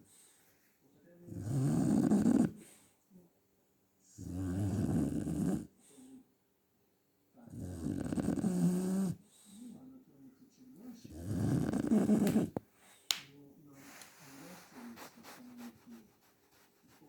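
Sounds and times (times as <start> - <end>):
puppy snoring: 1.3 - 2.8, 4.2 - 5.9, 7.4 - 9.7, 11.0 - 12.6.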